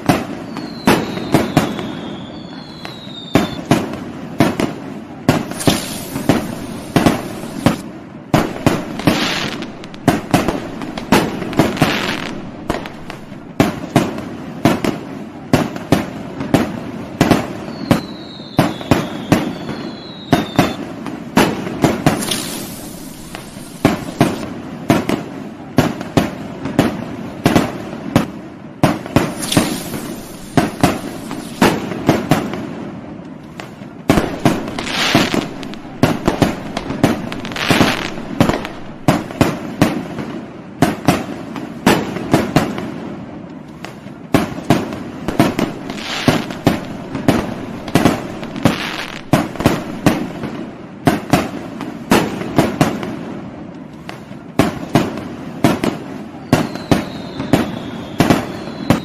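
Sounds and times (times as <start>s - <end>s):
falling firework whistles: 0.0s - 4.7s, 5.3s - 14.3s, 17.2s - 24.5s, 28.9s - 32.6s, 33.4s - 40.3s, 44.4s - 51.4s, 55.6s - 59.0s
fireworks bangs and crackle: 0.0s - 59.0s.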